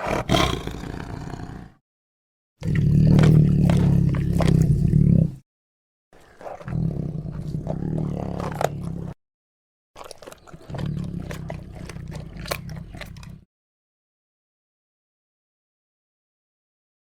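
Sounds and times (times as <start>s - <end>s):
leopard rumbling: 0.0s - 1.8s, 2.6s - 5.4s, 6.2s - 9.2s, 10.0s - 13.5s
teeth crunching bone: 2.6s - 4.7s, 6.2s - 9.2s, 10.0s - 13.4s.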